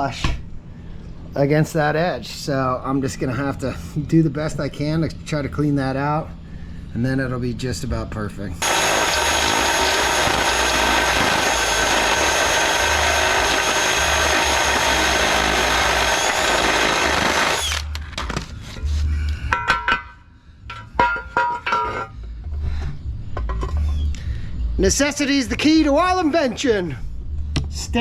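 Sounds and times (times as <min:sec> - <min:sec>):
power grinder grinding metal: 0:08.6 - 0:17.9.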